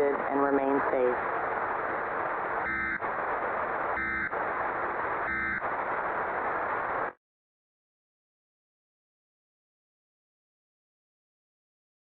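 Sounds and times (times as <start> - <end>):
buzzy digital data bursts: 0.0 - 7.1
static hiss: 0.0 - 7.2.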